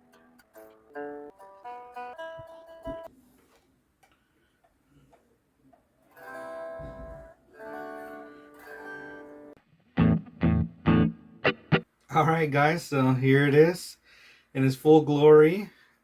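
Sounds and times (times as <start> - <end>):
acoustic guitar strumming: 10.0 - 11.8.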